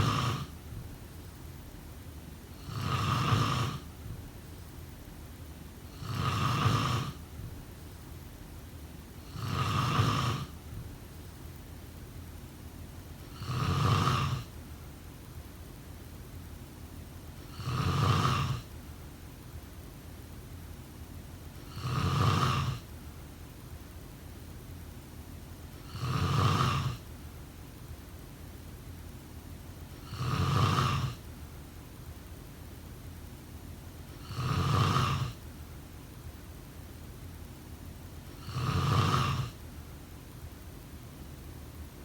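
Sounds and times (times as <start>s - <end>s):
snoring: 0.0s - 0.6s, 2.5s - 3.9s, 5.9s - 7.3s, 9.2s - 10.6s, 13.3s - 14.5s, 17.4s - 18.7s, 21.6s - 22.9s, 25.8s - 27.1s, 30.0s - 31.2s, 34.2s - 35.4s, 38.3s - 39.6s.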